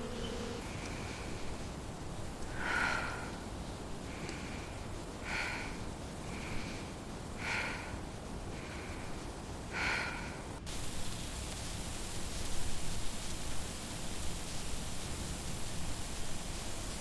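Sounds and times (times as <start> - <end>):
heavy breathing: 0.0 - 10.6
steady hiss: 0.0 - 17.0.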